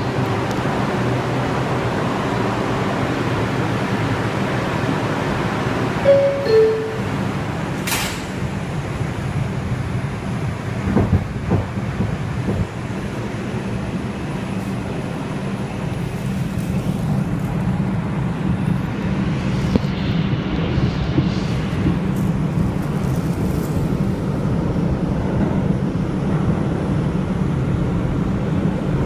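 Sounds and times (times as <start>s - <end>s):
subway train rumble: 0.0s - 29.0s
falling two-note tone: 6.0s - 7.3s.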